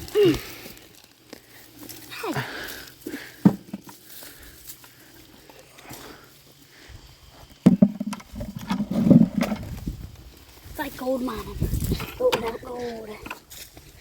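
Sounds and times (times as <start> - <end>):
dull thuds: 3.4 - 3.9, 7.6 - 9.9.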